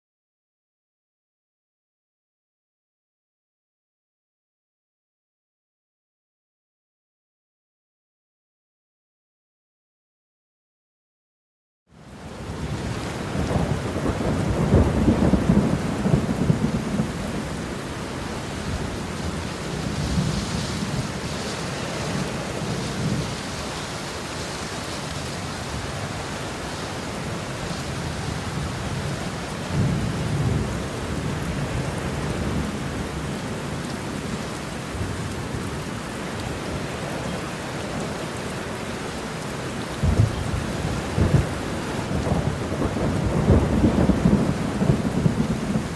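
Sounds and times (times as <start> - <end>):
heavy rain: 11.9 - 45.9
thunder rumbling: 12.4 - 38.2, 39.9 - 45.9.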